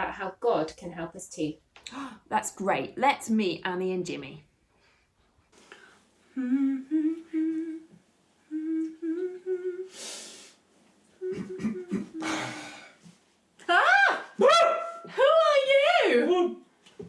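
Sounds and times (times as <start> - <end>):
short breathy hiss: 4.8 - 6.1, 9.9 - 10.7
person humming a tune: 6.3 - 10.4, 11.2 - 12.8.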